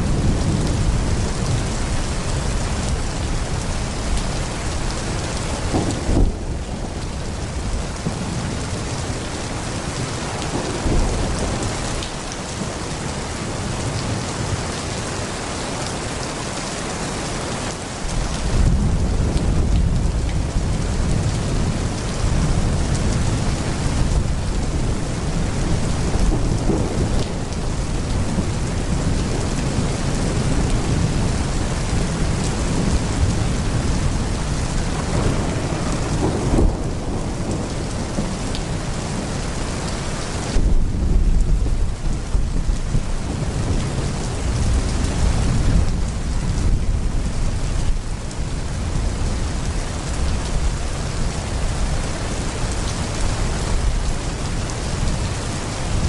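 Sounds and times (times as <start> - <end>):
rolling thunder: 0.0 - 9.3, 9.9 - 12.7, 18.2 - 49.4
heavy rain: 0.0 - 56.0.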